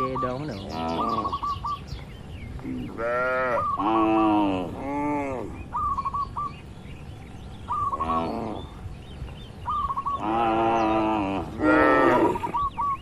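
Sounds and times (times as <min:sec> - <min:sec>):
bird chirping: 0:00.0 - 0:13.0
cows mooing: 0:02.9 - 0:05.6, 0:07.8 - 0:08.8, 0:10.1 - 0:12.6.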